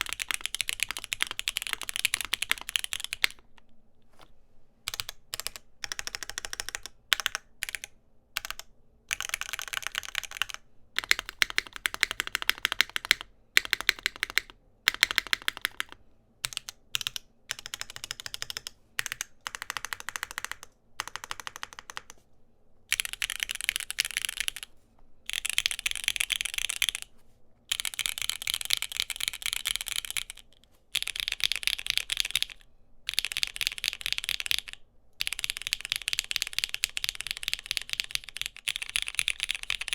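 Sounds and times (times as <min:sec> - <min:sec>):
fast typing on mechanical keyboard: 0:00.0 - 0:03.6, 0:04.9 - 0:22.2, 0:22.9 - 0:24.7, 0:25.3 - 0:27.1, 0:27.7 - 0:39.9.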